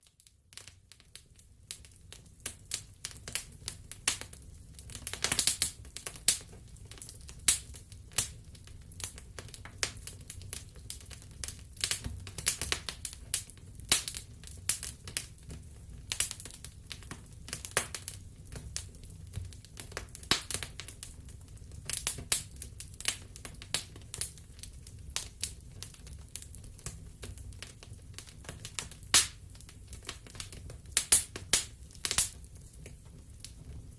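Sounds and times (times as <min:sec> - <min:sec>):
wood fire crackling: 0:00.0 - 0:33.9.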